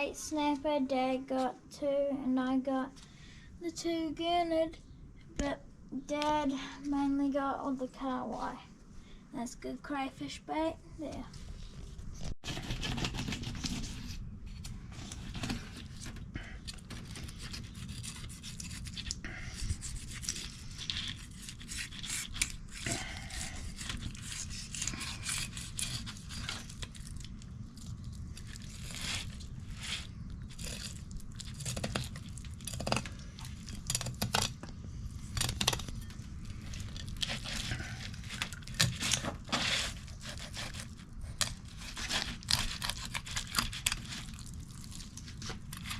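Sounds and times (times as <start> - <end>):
knife scraping and cutting fish: 16.7 - 27.2, 28.4 - 34.5, 36.7 - 45.9.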